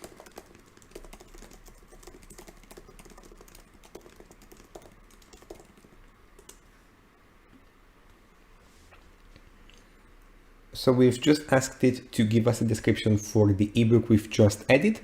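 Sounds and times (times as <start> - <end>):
typing on a keyboard: 0.0 - 6.6.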